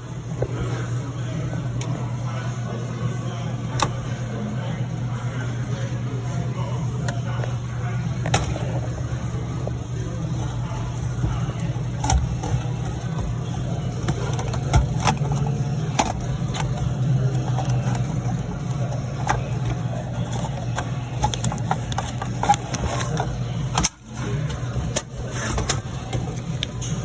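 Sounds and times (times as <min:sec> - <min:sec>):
car engine hum: 0:06.8 - 0:27.0.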